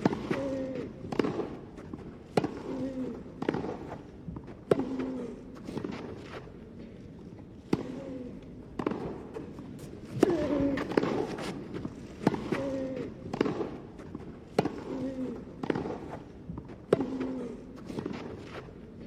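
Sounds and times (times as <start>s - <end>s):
rackets striking tennis ball: 0.0s - 7.0s, 7.6s - 19.0s
players grunting: 0.1s - 1.0s, 10.1s - 11.1s.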